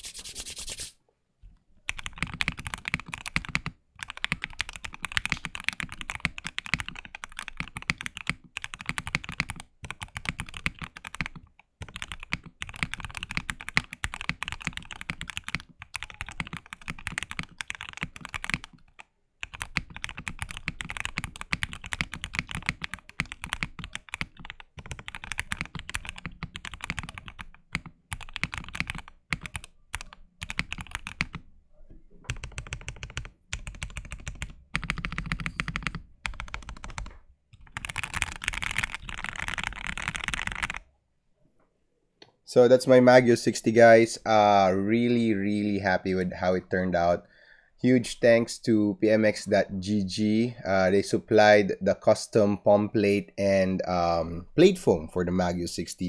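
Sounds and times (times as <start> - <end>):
mechanical keyboard typing: 1.9 - 31.4, 32.3 - 40.8.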